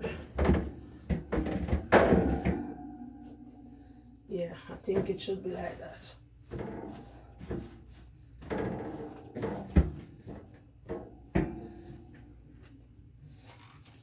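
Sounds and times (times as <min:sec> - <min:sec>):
refrigerator shelves clunking: 0:00.0 - 0:02.8, 0:08.4 - 0:12.1.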